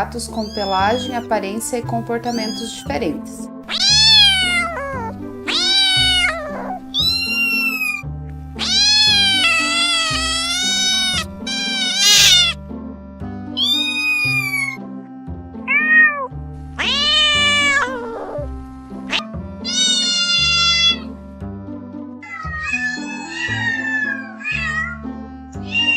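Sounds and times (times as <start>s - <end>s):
low background music: 0.0s - 25.9s
cat meowing: 0.4s - 1.3s, 2.3s - 2.9s, 3.7s - 8.0s, 8.6s - 12.6s, 13.6s - 14.8s, 15.6s - 18.5s, 19.1s - 21.1s, 22.2s - 25.9s.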